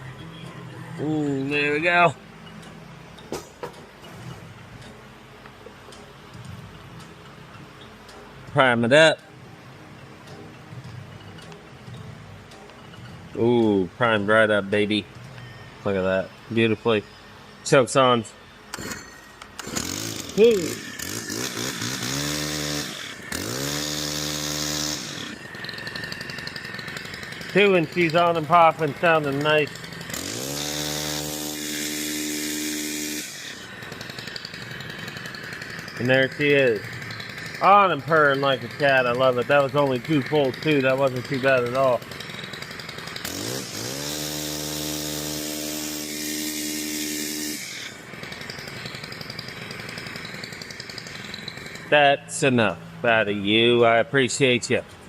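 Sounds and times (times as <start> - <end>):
brushcutter engine starting: 1.0 - 2.2, 18.7 - 55.0.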